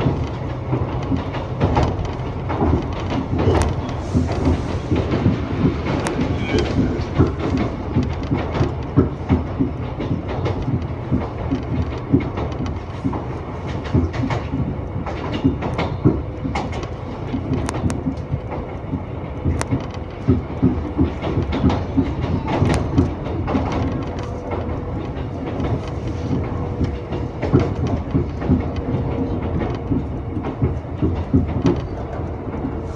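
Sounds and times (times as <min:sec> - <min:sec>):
rail clicks and knocks: 0:00.0 - 0:32.9
railcar wheels rumbling: 0:00.0 - 0:32.9.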